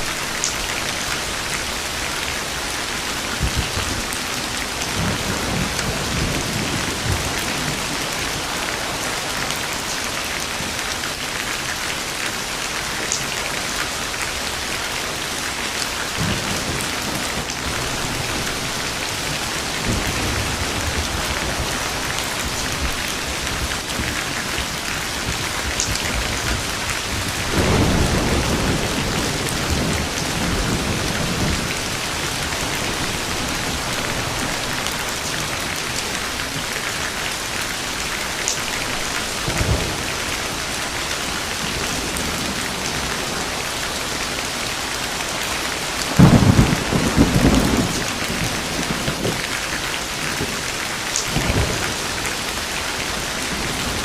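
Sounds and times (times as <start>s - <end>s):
steady rain falling: 0.0s - 54.0s
thunder rolling: 16.2s - 36.9s, 46.2s - 49.5s.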